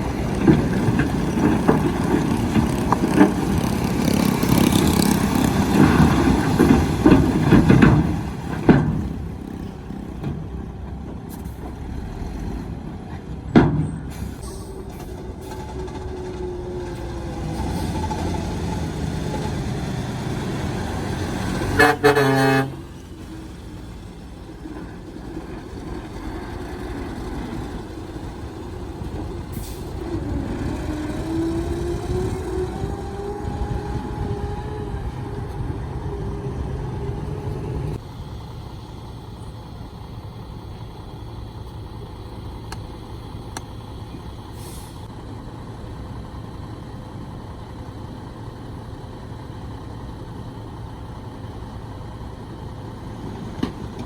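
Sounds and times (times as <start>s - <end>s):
diesel truck engine running: 0.0s - 54.0s.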